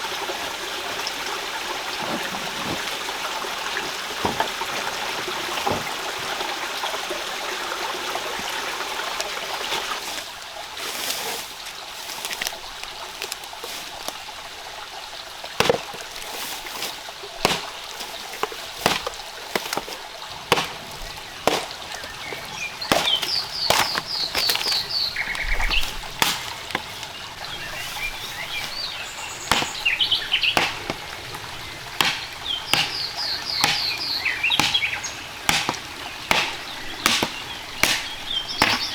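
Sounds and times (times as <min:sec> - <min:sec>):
running water: 0:00.0 - 0:38.9
sharp knocks: 0:15.6 - 0:16.0, 0:18.4 - 0:27.1, 0:28.6 - 0:38.9.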